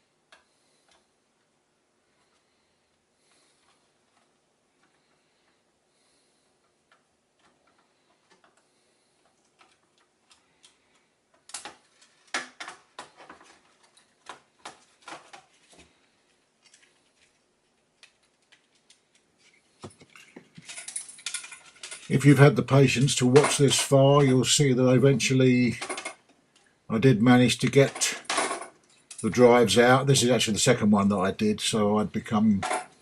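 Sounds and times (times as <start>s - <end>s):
plastic and metal parts clicking: 6.6s - 15.8s, 18.0s - 22.1s.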